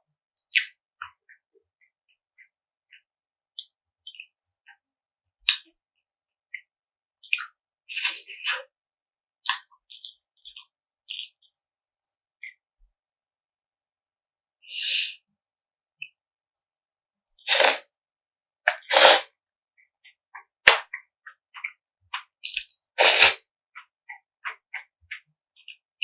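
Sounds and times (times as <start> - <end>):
noodle slurps: 17.5 - 17.8, 18.7 - 19.3, 23.0 - 23.4.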